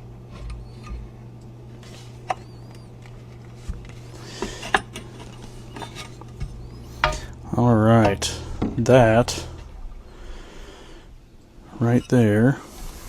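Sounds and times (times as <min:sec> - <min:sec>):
steady low hum: 0:00.0 - 0:11.8
metal rifle parts tapping: 0:05.8 - 0:07.4, 0:08.0 - 0:08.5.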